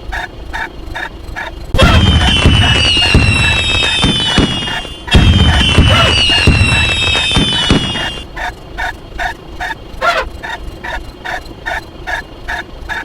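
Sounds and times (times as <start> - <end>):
low booms: 1.7 - 8.2
fireworks crackles: 1.8 - 8.2
fireworks whistles: 1.8 - 8.2.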